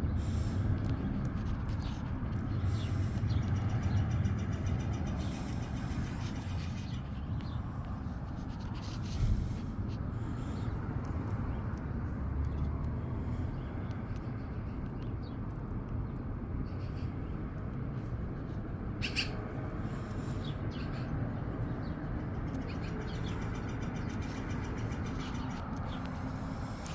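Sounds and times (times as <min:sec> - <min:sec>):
steady low rumble: 0:00.0 - 0:23.2
woodpecker short sharp calls: 0:19.0 - 0:19.4.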